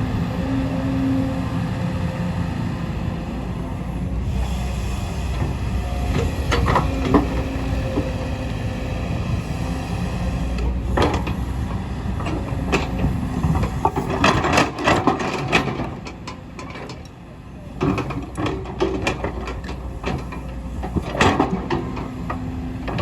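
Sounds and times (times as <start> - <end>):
excavator diesel engine running: 0.0 - 23.0.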